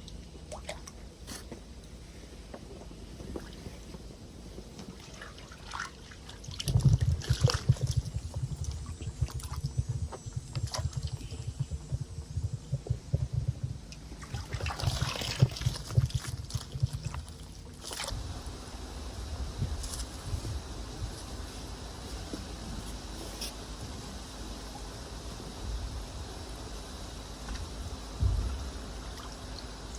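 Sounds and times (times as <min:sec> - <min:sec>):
water sloshing and splashing: 0:00.0 - 0:01.7, 0:04.6 - 0:11.9, 0:14.0 - 0:18.2.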